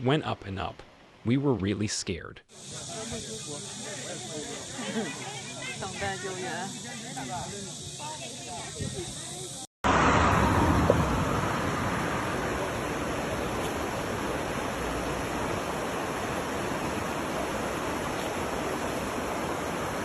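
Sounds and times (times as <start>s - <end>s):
floodwater rushing: 9.9s - 20.0s.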